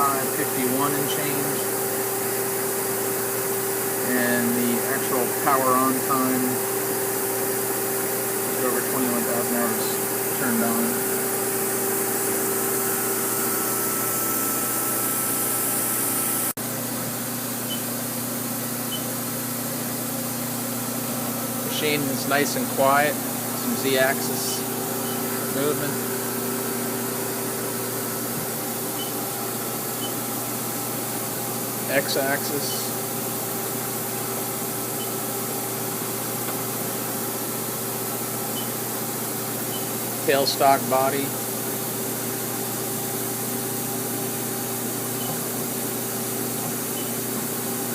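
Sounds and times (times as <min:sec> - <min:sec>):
lathe humming: 0:00.0 - 0:16.6, 0:18.5 - 0:47.9
steady machine tones: 0:20.3 - 0:47.9.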